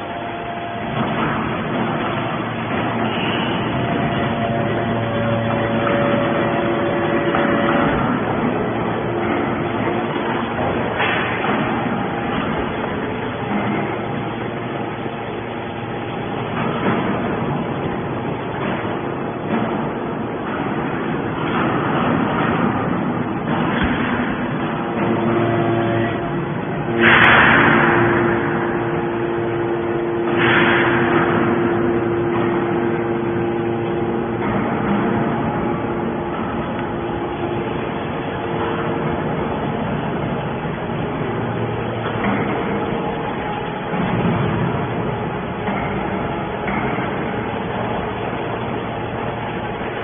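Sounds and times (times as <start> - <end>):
faint machine hum: 0.0 - 50.0
hydraulic scrap baler running: 0.0 - 50.0.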